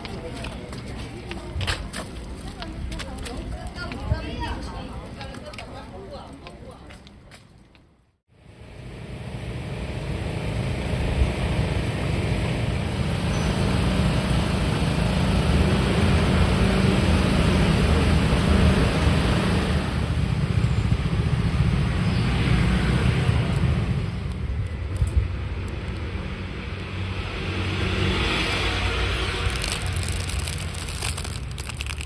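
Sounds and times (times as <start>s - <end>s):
motor vehicle rumble: 8.4s - 32.0s.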